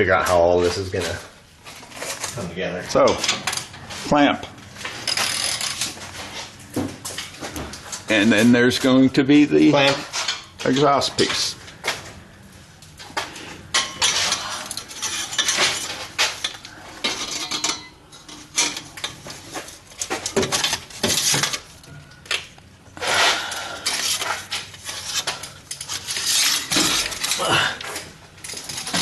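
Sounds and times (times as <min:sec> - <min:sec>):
metal exhaust pipes clanking: 0:13.3 - 0:22.1.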